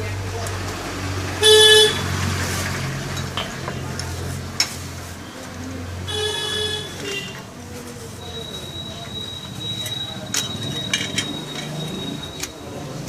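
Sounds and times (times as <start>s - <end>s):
low traffic hum: 0.0s - 13.0s
vehicle horn honks: 1.4s - 2.1s, 6.1s - 7.5s.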